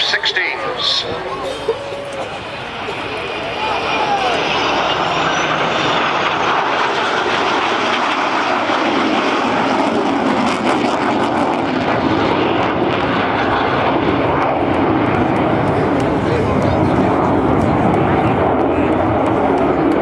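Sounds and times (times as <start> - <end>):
jet aircraft roar: 0.0 - 20.0.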